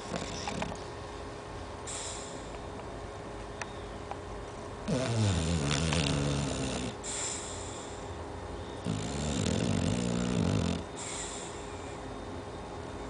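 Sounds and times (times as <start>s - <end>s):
dog snoring: 0.0s - 0.8s, 4.8s - 7.5s, 8.8s - 11.5s
breathy hiss of air: 1.8s - 2.6s, 7.0s - 8.2s, 11.0s - 12.0s.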